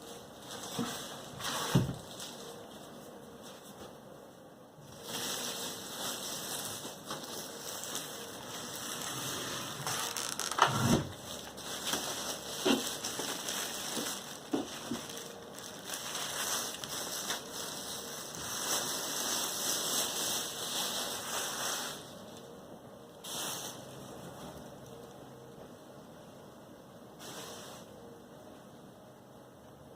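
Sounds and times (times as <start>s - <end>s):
packaging rustling and scraping: 0.0s - 4.0s, 4.8s - 22.5s, 23.2s - 24.8s.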